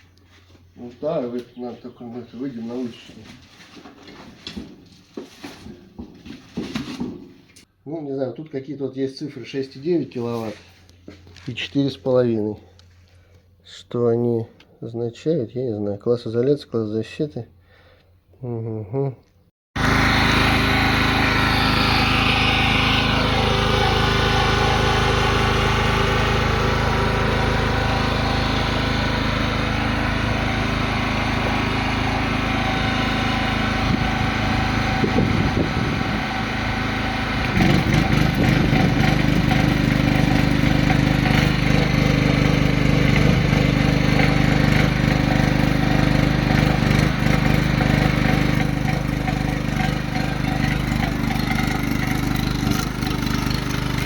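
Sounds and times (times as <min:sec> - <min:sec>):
petrol generator engine running: 0:19.8 - 0:54.0.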